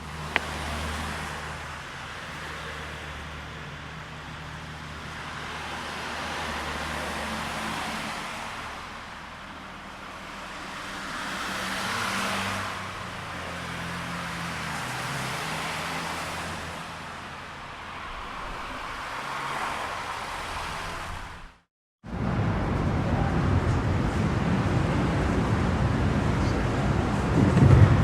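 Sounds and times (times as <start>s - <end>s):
street traffic road noise: 0.0s - 28.0s
vehicles passing: 0.0s - 28.0s.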